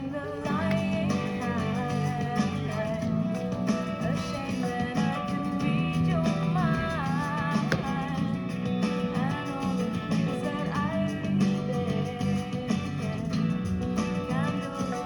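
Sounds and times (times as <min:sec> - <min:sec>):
guitar: 0:00.0 - 0:15.0
person singing sliding melody: 0:00.0 - 0:15.0.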